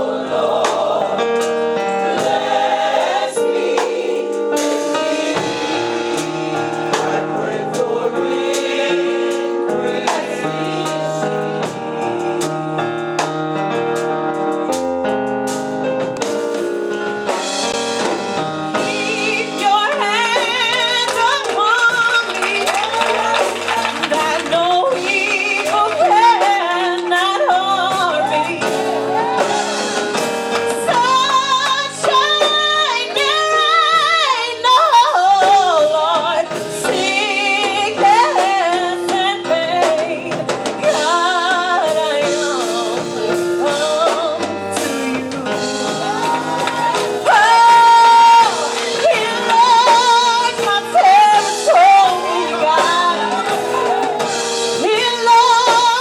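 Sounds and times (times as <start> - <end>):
gospel group singing: 0.0 - 14.5, 16.2 - 56.0
instrumental accompaniment: 0.0 - 56.0
woman singing lead: 18.8 - 29.9, 30.7 - 56.0.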